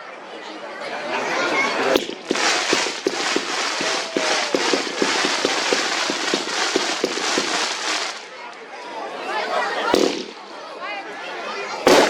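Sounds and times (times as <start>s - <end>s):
fireworks firing rapid volley: 1.9s - 8.3s, 9.9s - 10.6s
crackling hiss: 2.0s - 8.3s.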